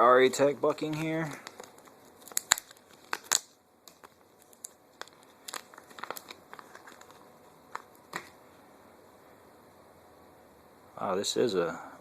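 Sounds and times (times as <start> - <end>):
crinkling and rustling: 0.4 - 8.4.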